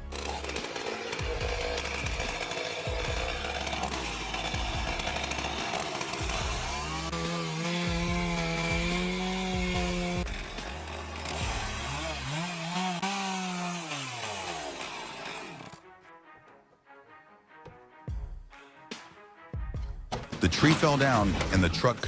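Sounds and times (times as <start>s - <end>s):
chainsaw cutting a tree: 0.0s - 15.8s.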